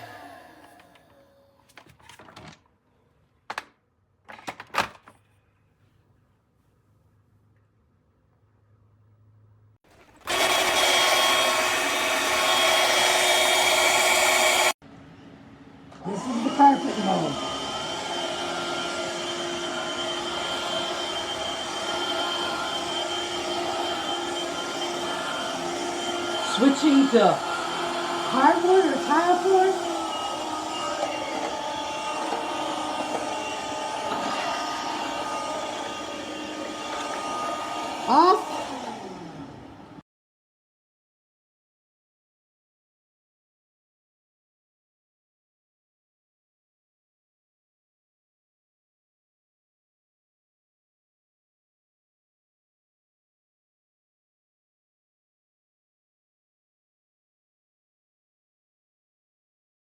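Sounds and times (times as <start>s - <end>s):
vacuum cleaner motor whirring: 0.0s - 1.8s, 9.9s - 14.8s, 15.9s - 40.0s.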